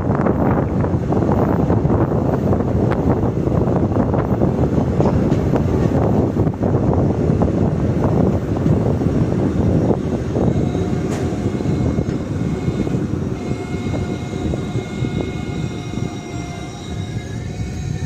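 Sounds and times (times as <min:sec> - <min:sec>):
train rumbling on track: 0:00.0 - 0:18.0
high ringing tone: 0:10.4 - 0:18.0.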